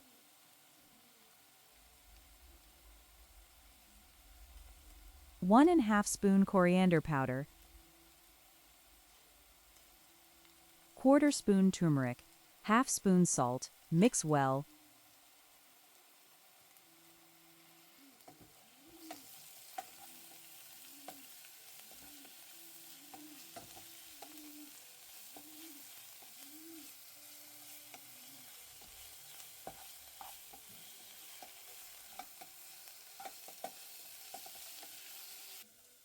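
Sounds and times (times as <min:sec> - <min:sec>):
onion masala sizzling in oil: 0:00.0 - 0:05.4, 0:07.5 - 0:11.5, 0:12.1 - 0:13.0, 0:13.6 - 0:36.0
spoon scraping and knocking pan: 0:28.7 - 0:35.0.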